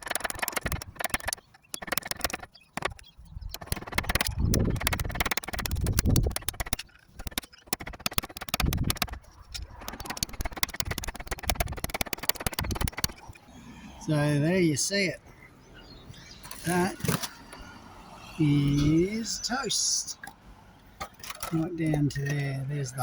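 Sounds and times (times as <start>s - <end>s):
roof tiles clinking: 0.0s - 13.4s.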